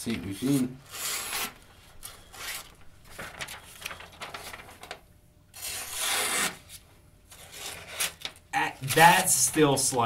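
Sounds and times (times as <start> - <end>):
knife blade rasping through material: 5.6 - 6.6.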